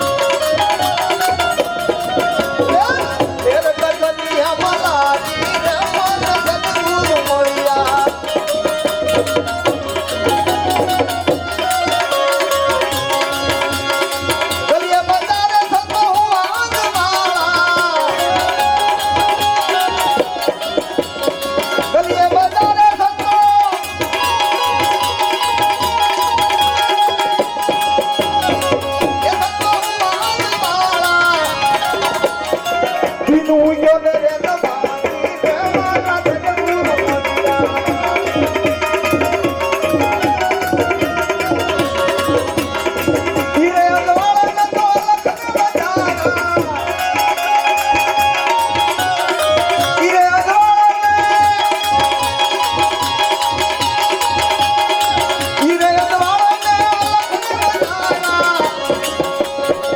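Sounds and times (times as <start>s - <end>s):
devotional instrumental music: 0.0s - 59.9s
tabla rhythm: 0.0s - 59.9s.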